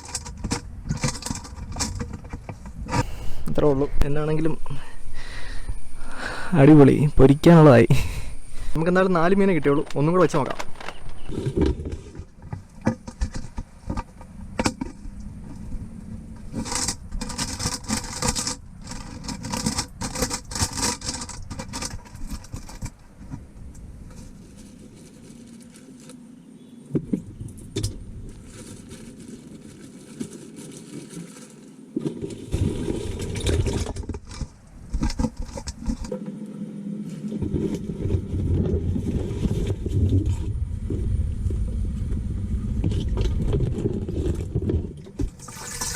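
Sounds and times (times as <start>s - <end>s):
muffled underwater rumble: 2.2s - 12.6s, 35.8s - 45.2s
water splashing: 45.0s - 45.9s.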